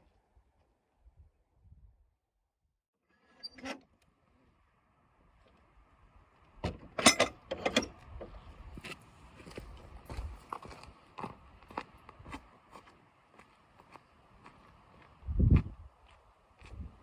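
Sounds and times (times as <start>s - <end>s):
gate latch clanking: 6.6s - 8.0s.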